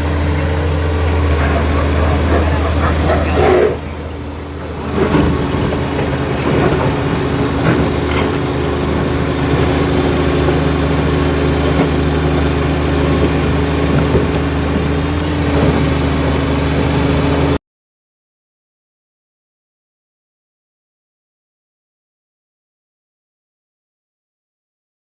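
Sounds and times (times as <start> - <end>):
bulldozer diesel engine running: 0.0 - 17.6.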